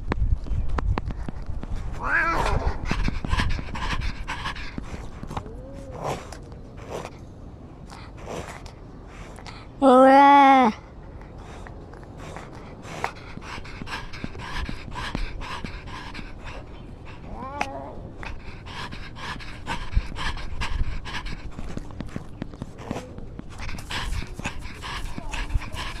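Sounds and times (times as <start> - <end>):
pet panting quickly: 1.0 - 5.5, 10.7 - 26.0
pet whining: 2.0 - 7.1, 12.0 - 26.0.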